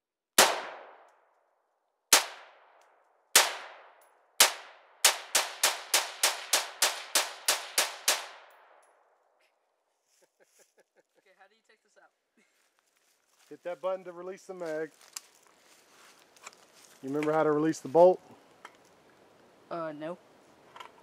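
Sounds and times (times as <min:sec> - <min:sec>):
rifle shots: 0:00.4 - 0:01.0, 0:02.1 - 0:02.7, 0:03.4 - 0:08.8.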